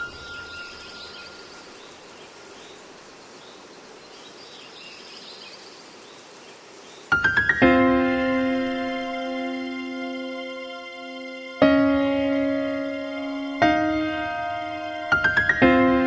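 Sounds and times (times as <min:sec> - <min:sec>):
soft hiss: 0:00.0 - 0:07.4
faint bird chirps: 0:00.0 - 0:07.5.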